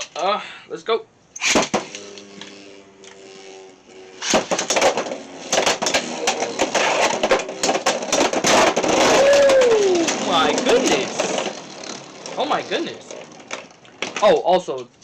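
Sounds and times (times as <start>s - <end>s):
spinning tops clattering: 1.4s - 2.3s, 4.2s - 14.0s
ripcord launcher rip: 1.4s - 11.6s
spinning tops whirring: 1.4s - 14.1s.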